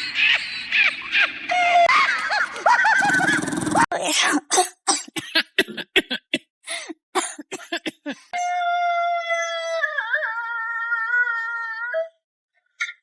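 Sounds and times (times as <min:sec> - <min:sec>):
rough vocal bursts: 0:03.0 - 0:03.9.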